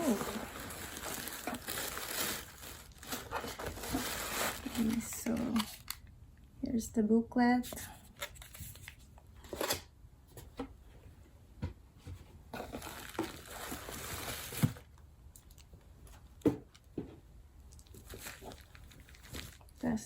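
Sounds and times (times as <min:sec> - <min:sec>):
paper packaging rustling: 0:00.0 - 0:06.1, 0:12.6 - 0:14.9, 0:17.8 - 0:19.8.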